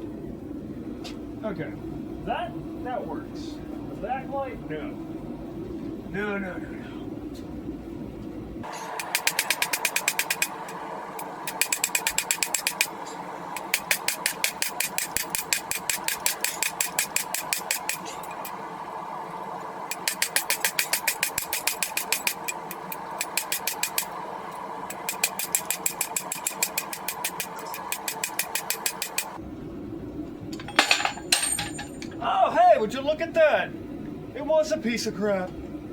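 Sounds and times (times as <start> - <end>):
power hammer striking hot steel: 8.6 - 18.6, 19.9 - 29.4, 30.5 - 32.2.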